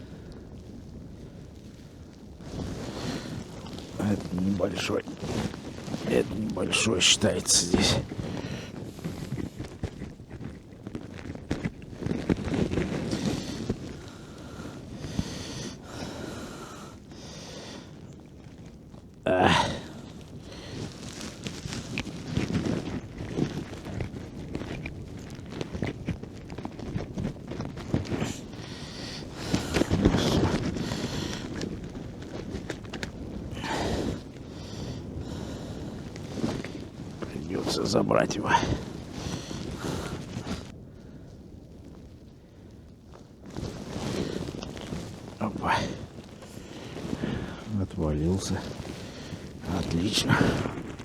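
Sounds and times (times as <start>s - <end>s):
wind buffeting microphone: 0.0s - 51.0s.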